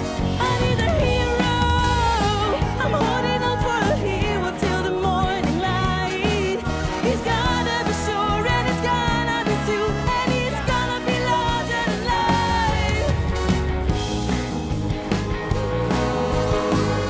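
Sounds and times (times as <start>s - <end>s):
rock band music: 0.0s - 17.0s
steady drum beat: 0.0s - 17.0s
person singing: 0.2s - 13.6s.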